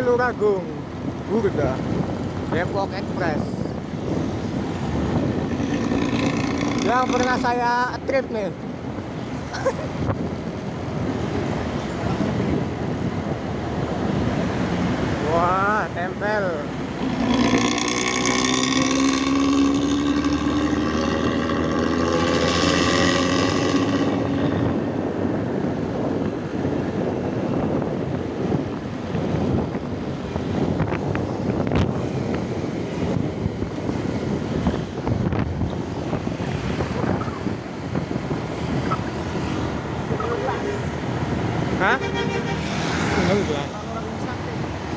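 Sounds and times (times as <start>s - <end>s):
road noise: 0.0s - 44.9s
wind buffeting microphone: 0.0s - 44.9s
bus engine droning: 8.6s - 44.9s.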